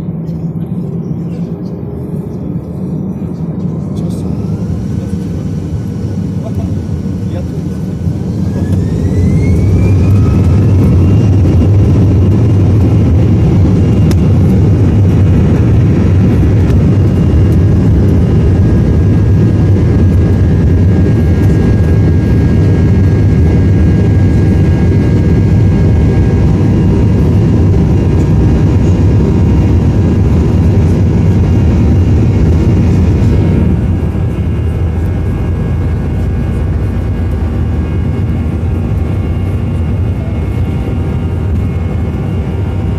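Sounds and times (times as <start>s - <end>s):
high engine whine: 0.0s - 42.9s
jet engines roaring: 0.0s - 42.9s.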